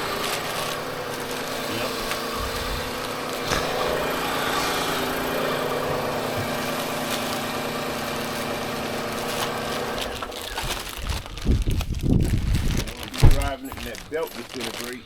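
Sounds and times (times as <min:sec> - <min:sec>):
car engine idling: 0:00.0 - 0:11.2.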